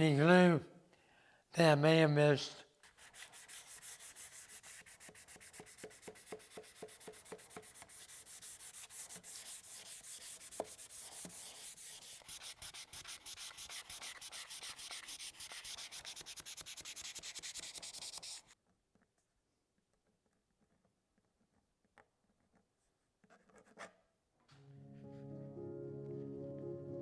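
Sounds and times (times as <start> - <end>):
sandpaper rubbing on wood: 2.8 - 18.6.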